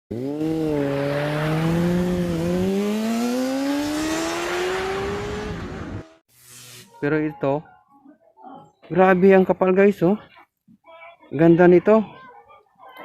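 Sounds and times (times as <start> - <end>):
vehicle engine accelerating: 0.1 - 6.2.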